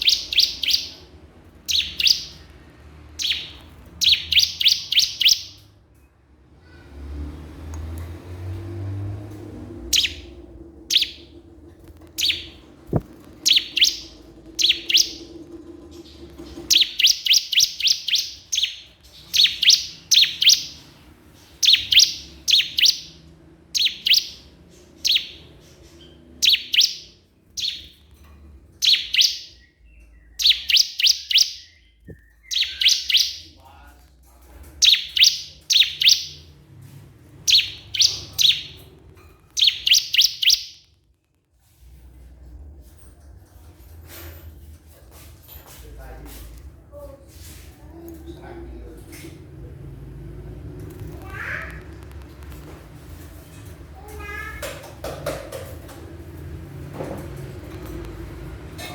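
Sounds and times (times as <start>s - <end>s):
bird singing high chirping bursts: 0.0s - 1.1s, 1.7s - 2.5s, 3.2s - 5.6s, 9.9s - 11.3s, 12.2s - 15.3s, 16.7s - 28.0s, 28.8s - 33.6s, 34.8s - 36.6s, 37.4s - 38.9s, 39.6s - 40.9s.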